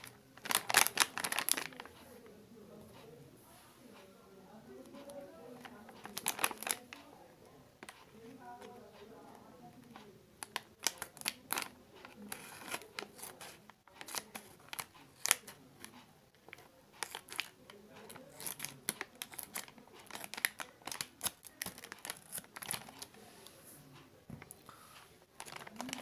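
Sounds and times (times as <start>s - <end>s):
plastic wrapper crinkling and tearing: 0.0s - 1.9s, 6.0s - 7.0s, 10.4s - 15.6s, 16.5s - 23.1s, 25.4s - 26.0s.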